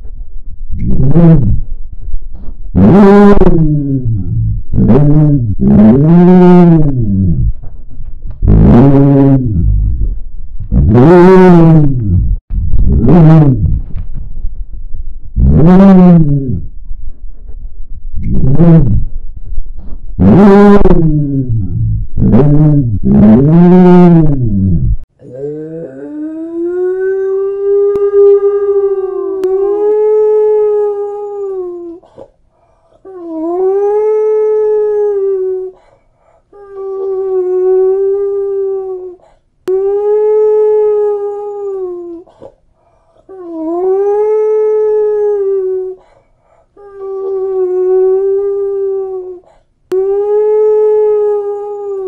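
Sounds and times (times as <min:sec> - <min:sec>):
dog howling: 0:25.2 - 0:32.0, 0:46.8 - 0:52.0.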